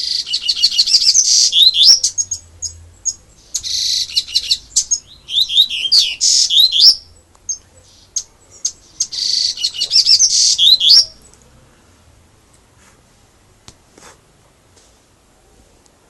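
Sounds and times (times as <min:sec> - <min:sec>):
bird chips: 0:00.0 - 0:11.4
rapid high bird song: 0:00.0 - 0:11.4.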